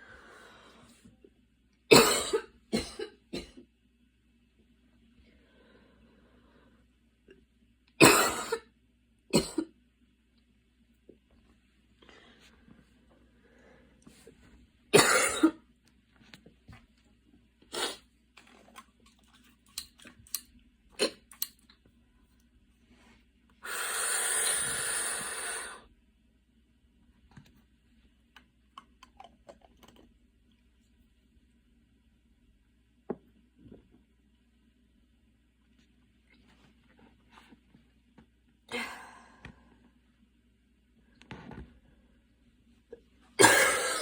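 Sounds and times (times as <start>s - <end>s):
woman coughing: 1.9s - 3.6s, 8.0s - 8.7s, 9.4s - 9.6s, 15.0s - 15.6s, 43.4s - 44.0s.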